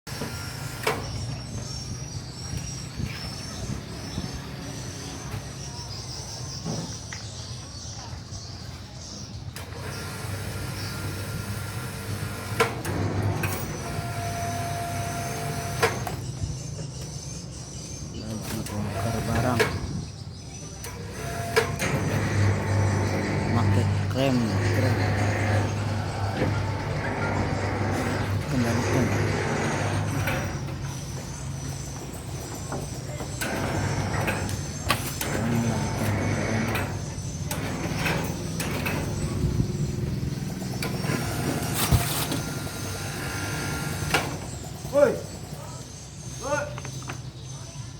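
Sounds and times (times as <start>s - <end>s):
machinery humming: 18.1s - 20.0s, 20.8s - 46.5s.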